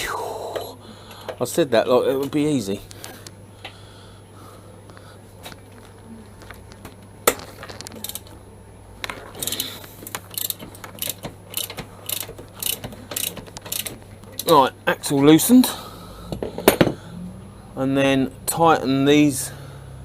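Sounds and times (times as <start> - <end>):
socket wrench ratchet clicking: 8.0 - 8.2, 10.3 - 14.5.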